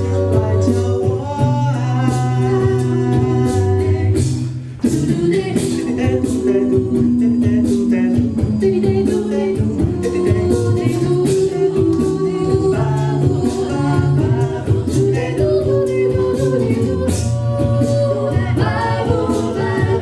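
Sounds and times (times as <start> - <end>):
choir singing in harmony: 0.0 - 4.2, 4.8 - 20.0
low bass line: 0.0 - 20.0.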